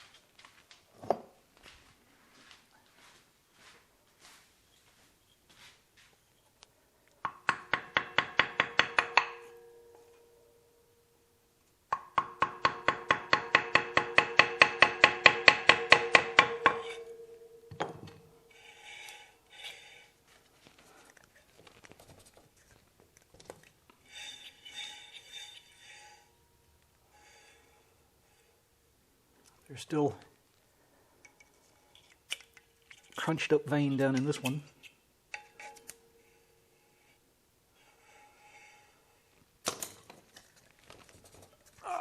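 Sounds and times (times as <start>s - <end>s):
scraping and rubbing: 18.5s - 26.4s, 37.8s - 39.4s.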